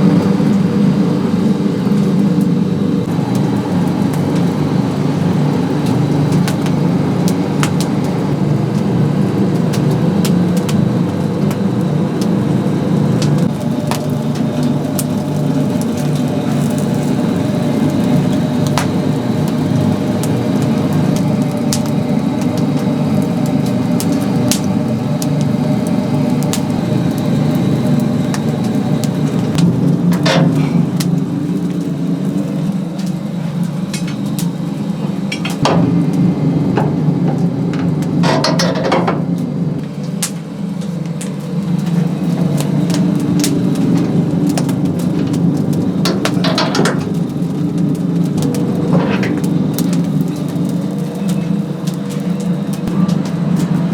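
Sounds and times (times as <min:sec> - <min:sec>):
low machine hum: 0:00.0 - 0:53.9
sharp crackles and clicks: 0:00.0 - 0:53.9.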